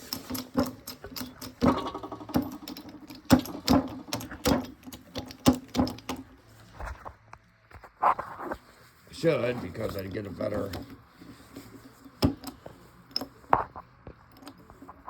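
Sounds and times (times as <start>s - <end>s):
hydraulic jack pump clicking: 0.0s - 6.3s.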